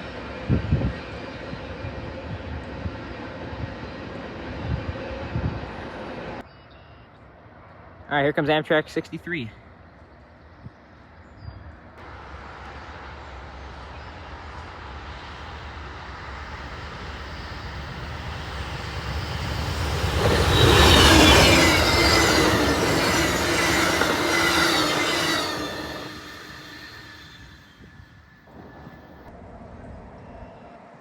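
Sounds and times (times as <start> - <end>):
passenger train passing: 0.0 - 6.5, 7.2 - 31.0
wheel squeal: 16.2 - 29.2.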